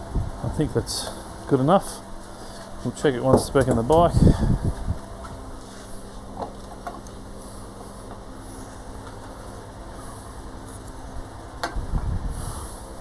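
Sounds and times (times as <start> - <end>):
low thump and rumble: 0.0 - 0.8, 3.3 - 5.4
steady low hum: 0.0 - 13.0.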